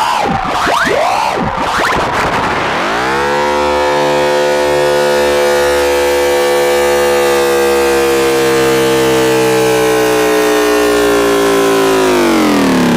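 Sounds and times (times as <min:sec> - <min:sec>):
synthesizer drone: 0:00.0 - 0:12.9.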